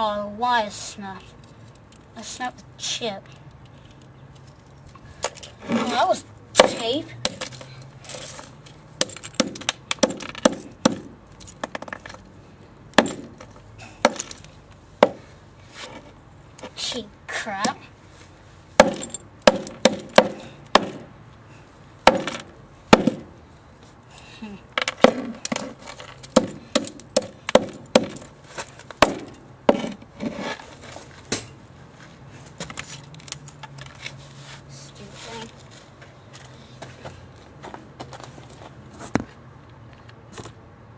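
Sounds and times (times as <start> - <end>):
hard blows smashing a pen: 9.0 - 11.9, 13.0 - 15.2, 18.8 - 21.1, 22.0 - 23.3, 26.2 - 28.3, 29.0 - 30.0.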